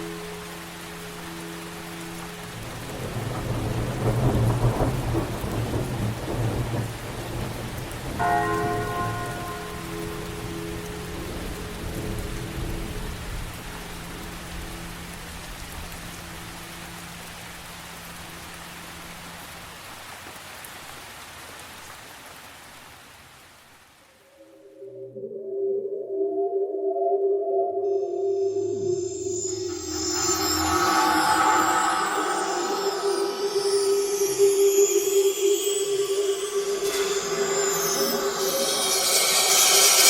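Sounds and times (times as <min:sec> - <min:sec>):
rain falling: 0:00.0 - 0:24.8, 0:28.6 - 0:40.0
thunder rumble: 0:02.5 - 0:16.1, 0:28.7 - 0:33.9
bell ringing: 0:28.5 - 0:40.0.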